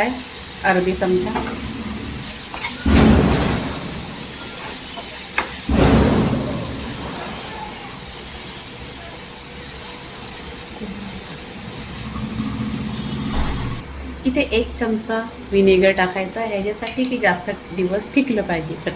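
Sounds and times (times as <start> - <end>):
stirring in a pan: 0.0 - 12.1
food sizzling in oil: 0.0 - 13.8.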